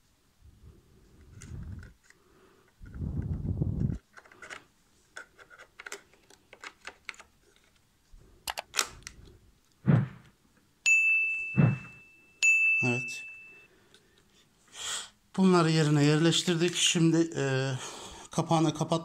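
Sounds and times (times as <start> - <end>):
bright ringing pings: 10.8 - 13.7.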